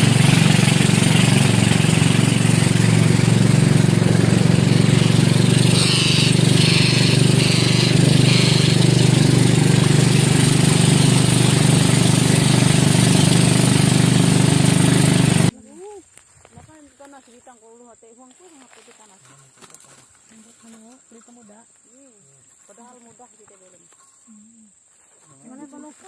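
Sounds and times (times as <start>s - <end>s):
engine droning: 0.0s - 15.5s
high-pitched chirps: 4.7s - 9.2s.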